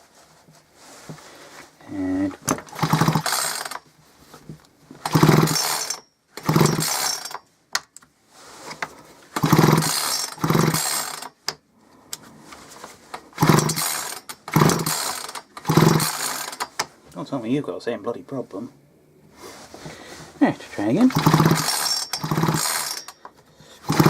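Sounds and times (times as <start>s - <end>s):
chainsaw recoil starter cord pulled: 2.4s - 3.8s, 5.0s - 7.5s, 9.3s - 11.6s, 13.2s - 16.9s, 21.0s - 24.0s.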